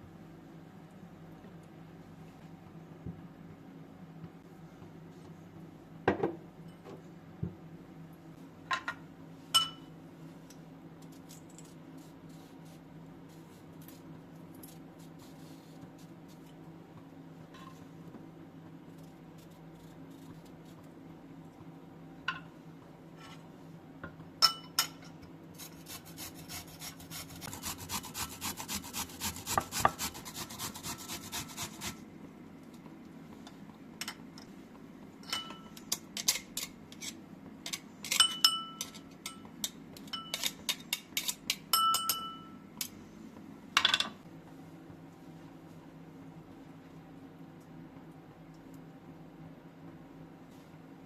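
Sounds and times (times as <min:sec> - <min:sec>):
utensils clinking against dishes: 0:35.2 - 0:42.6.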